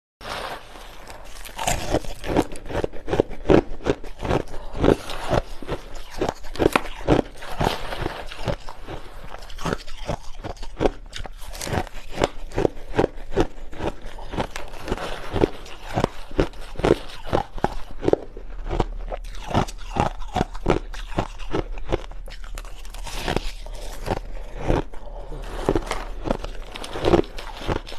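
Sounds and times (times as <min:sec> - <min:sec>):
ice being crunched: 0:00.2 - 0:13.1, 0:13.7 - 0:21.3, 0:22.5 - 0:27.9.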